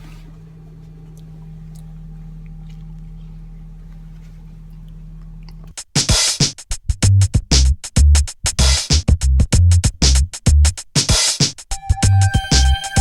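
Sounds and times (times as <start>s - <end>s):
electronic music with drum beat: 5.8s - 13.0s.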